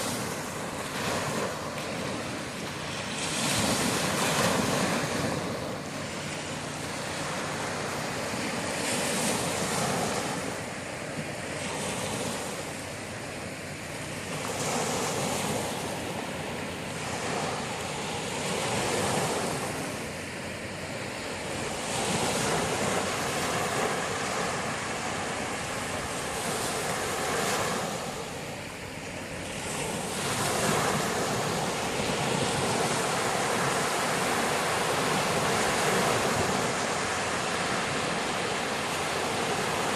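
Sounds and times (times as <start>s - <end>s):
sea waves breaking on shore: 0.0s - 39.9s.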